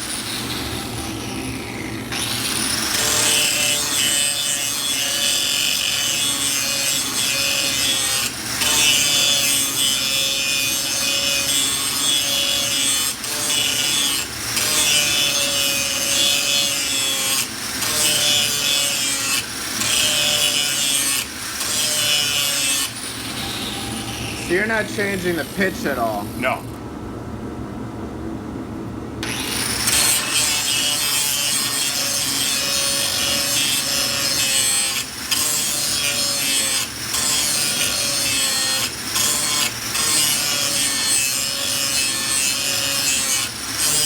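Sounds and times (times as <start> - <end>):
grinder disc grinding metal blade: 0.0 - 26.5, 29.2 - 44.0.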